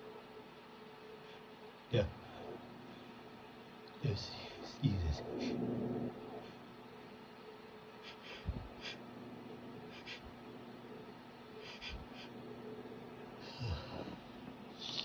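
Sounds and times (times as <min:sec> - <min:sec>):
steady low hum: 0:00.0 - 0:15.0
man sniffing: 0:09.9 - 0:10.3.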